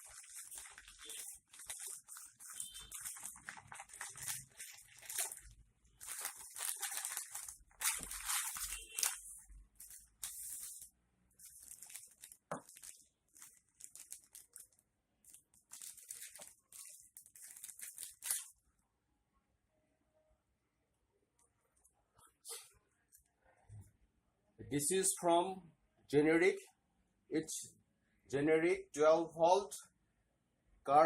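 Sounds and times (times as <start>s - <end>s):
packaging crinkling and tearing: 0.0s - 18.6s.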